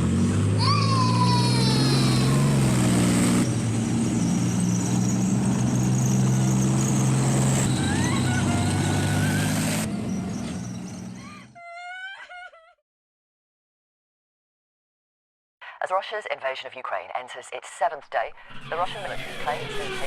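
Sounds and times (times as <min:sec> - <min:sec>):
heavy engine drone: 0:00.0 - 0:11.4.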